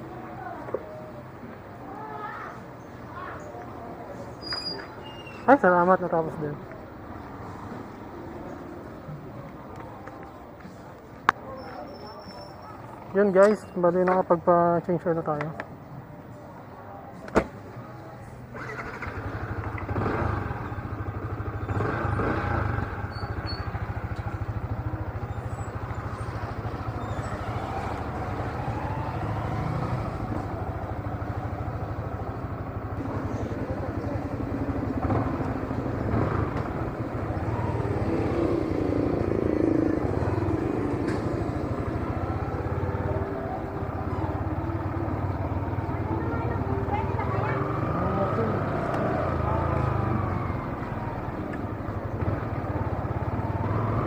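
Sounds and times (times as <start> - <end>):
shop and street noise: 0.0 - 54.0
motorcycle engine running: 18.6 - 54.0.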